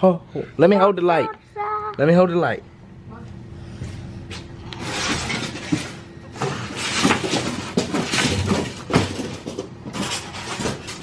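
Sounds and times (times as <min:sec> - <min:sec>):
hardware rustling and clattering: 0:04.3 - 0:11.0.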